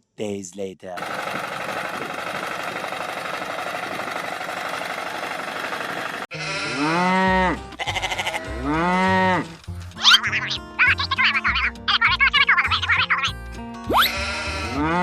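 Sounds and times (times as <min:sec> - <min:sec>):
noisy mechanical rattle: 0:01.0 - 0:06.3
sheep bleating: 0:06.3 - 0:09.4, 0:14.0 - 0:15.0.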